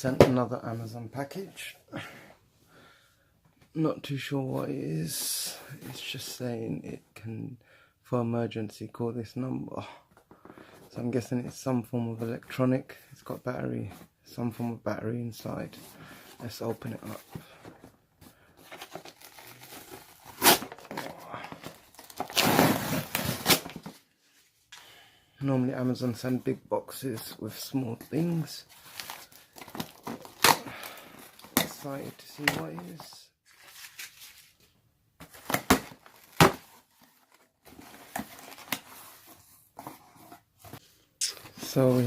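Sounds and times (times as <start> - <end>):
packaging rustling and crinkling: 16.3 - 24.1, 28.2 - 40.8
packaging tearing: 18.8 - 23.8, 28.8 - 31.8.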